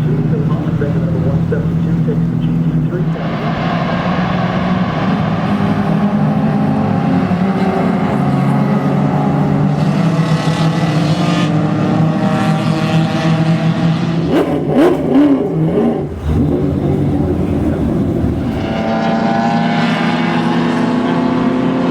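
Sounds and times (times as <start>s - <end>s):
race car engines revving: 0.0s - 21.9s
sharp exhaust cracks: 14.2s - 19.2s.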